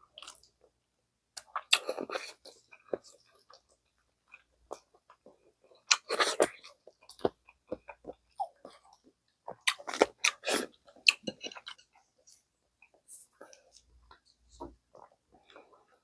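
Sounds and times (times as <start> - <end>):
wet chewing and biting: 9.5 - 11.9.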